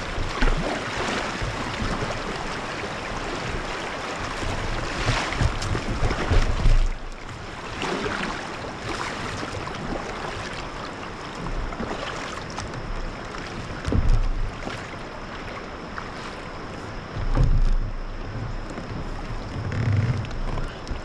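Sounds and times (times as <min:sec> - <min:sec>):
river water rushing: 0:00.0 - 0:06.8, 0:07.4 - 0:12.4.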